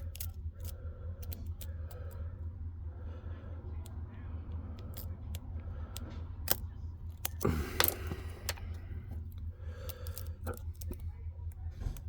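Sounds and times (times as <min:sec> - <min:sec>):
lock pick clicking: 0:00.0 - 0:02.1, 0:04.8 - 0:11.0.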